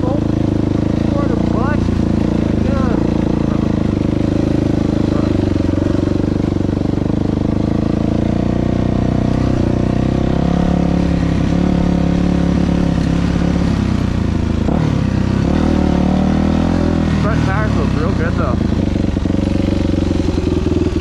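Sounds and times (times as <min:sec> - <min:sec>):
dirt bike engine running: 0:00.0 - 0:21.0.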